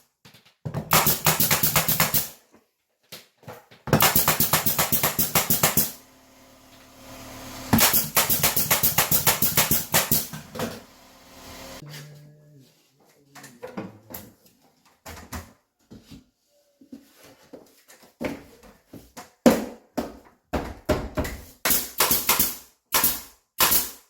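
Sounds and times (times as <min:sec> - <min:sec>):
power tool rattling: 0:04.0 - 0:11.8.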